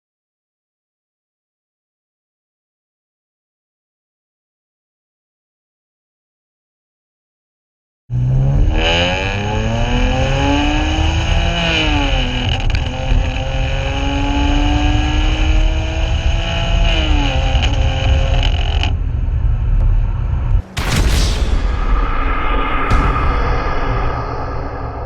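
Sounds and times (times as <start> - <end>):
car engine revving and misfiring: 8.1 - 21.1.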